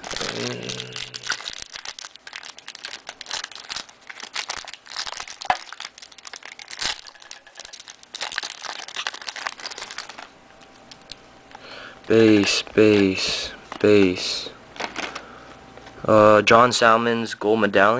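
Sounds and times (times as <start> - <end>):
wrapper crinkling and tearing: 0.0 - 11.6, 14.8 - 15.3
cards rustling and clicking: 14.8 - 16.0.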